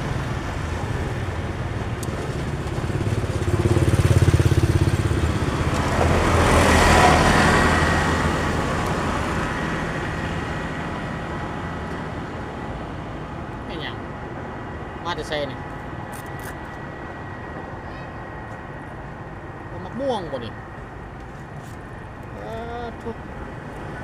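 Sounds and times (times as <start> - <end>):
vehicle passing by: 0.0 - 13.8.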